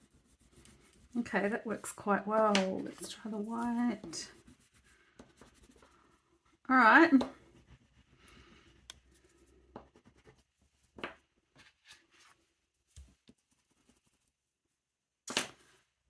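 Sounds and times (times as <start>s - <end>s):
oil pastel scratching paper: 0.0s - 10.6s.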